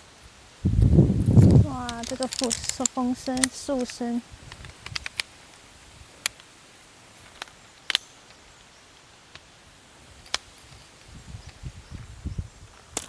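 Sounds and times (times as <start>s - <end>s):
leaves rustling: 0.0s - 13.0s
wind through trees: 0.0s - 13.0s
low gusty rumble: 0.6s - 2.8s
sharp clicks: 0.8s - 5.6s, 7.3s - 8.4s.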